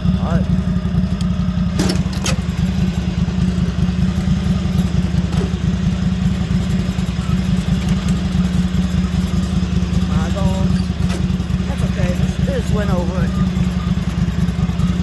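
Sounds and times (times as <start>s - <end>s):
lawn mower engine rumble: 0.0s - 15.0s.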